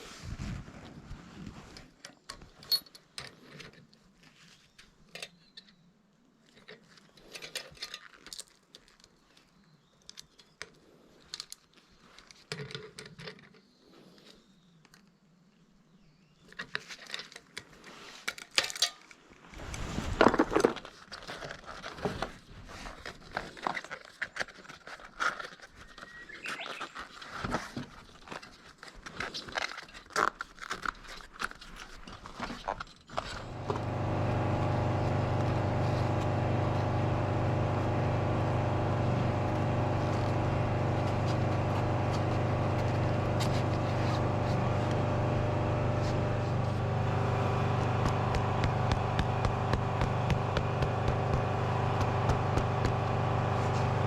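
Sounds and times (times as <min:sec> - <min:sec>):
metal tools and bike parts clinking: 0:18.6 - 0:19.1.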